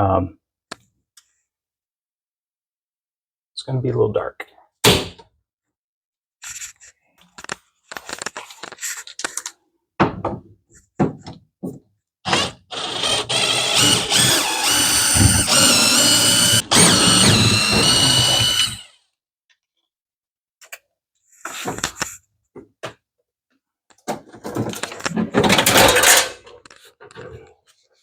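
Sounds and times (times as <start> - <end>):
drill-driver whining: 12.3 - 19.0.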